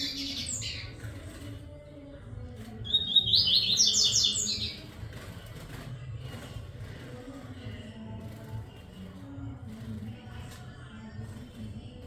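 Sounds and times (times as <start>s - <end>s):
bird song twittering: 0.0s - 1.2s, 2.8s - 5.0s.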